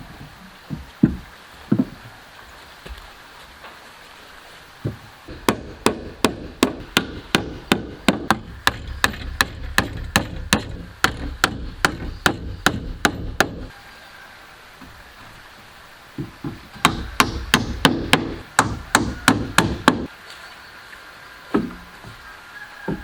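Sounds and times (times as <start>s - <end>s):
hammer striking wood: 5.3s - 13.7s, 16.2s - 20.1s, 21.6s - 21.8s.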